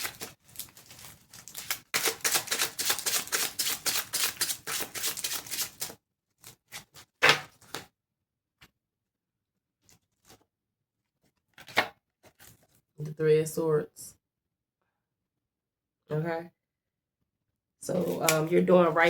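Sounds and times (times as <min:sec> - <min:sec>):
cards being shuffled: 0:00.0 - 0:07.9.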